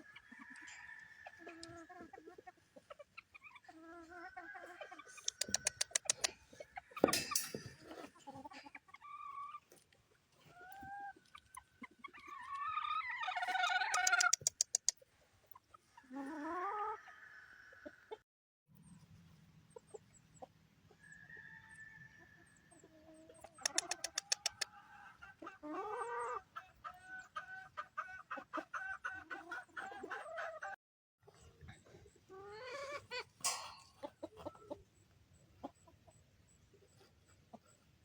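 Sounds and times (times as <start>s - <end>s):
chickens clucking: 0.0s - 17.1s, 19.6s - 21.1s, 22.4s - 38.0s.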